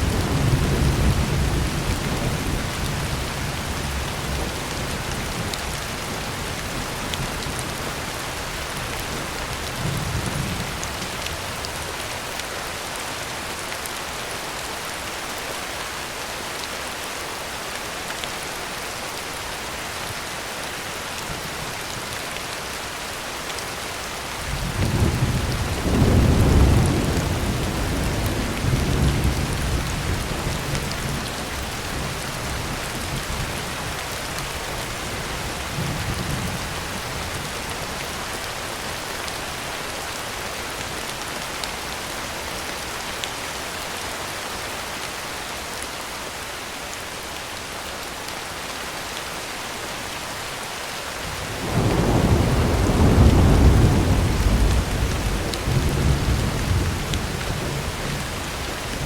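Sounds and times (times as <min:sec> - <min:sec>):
heavy rain on a tin roof: 0:00.0 - 0:59.0
thunder rumble: 0:51.6 - 0:58.6.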